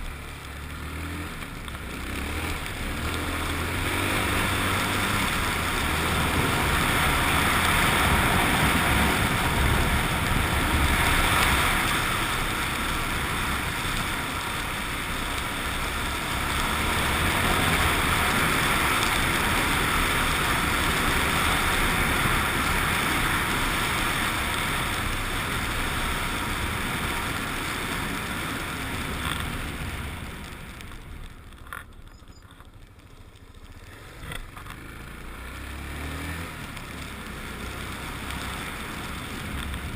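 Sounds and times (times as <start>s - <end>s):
motorcycle engine running: 0.0s - 39.9s
faint clicks: 30.4s - 34.9s.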